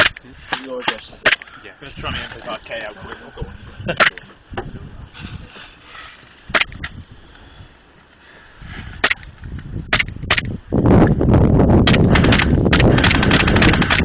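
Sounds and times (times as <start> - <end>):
airsoft gun shots: 11.8 - 14.0.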